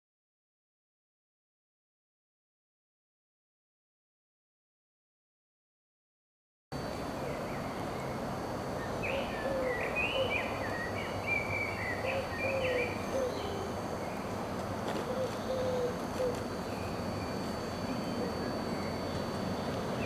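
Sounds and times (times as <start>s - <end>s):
steady background hum: 6.7s - 20.0s
birds chirping: 6.8s - 20.0s
short gliding bird calls: 15.0s - 16.9s.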